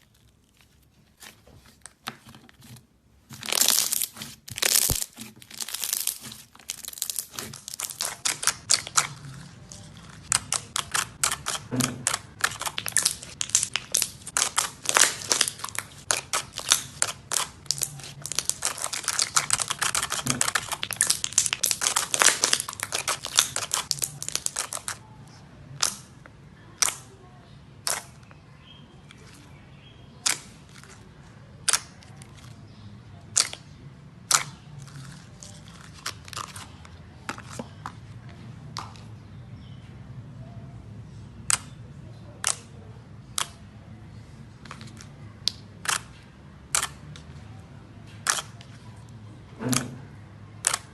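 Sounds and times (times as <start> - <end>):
slime crackling and popping: 3.3 - 25.0, 50.6 - 50.9.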